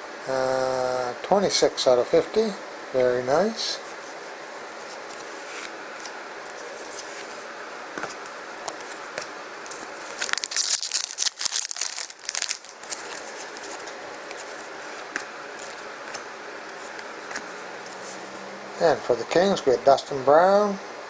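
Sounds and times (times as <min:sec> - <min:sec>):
foil wrapper tearing and crinkling: 0:09.8 - 0:13.9.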